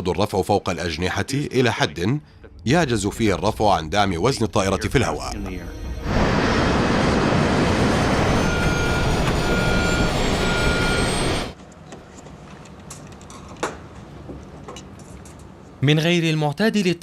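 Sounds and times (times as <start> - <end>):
warning alarm beeping: 4.3 - 11.6
faint rising whistle: 5.3 - 11.6
airliner rushing roar: 5.5 - 11.6.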